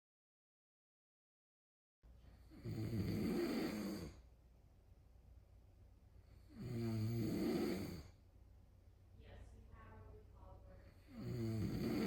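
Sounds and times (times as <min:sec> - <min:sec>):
cat snoring: 0:02.4 - 0:04.2, 0:06.3 - 0:08.2, 0:10.8 - 0:12.0.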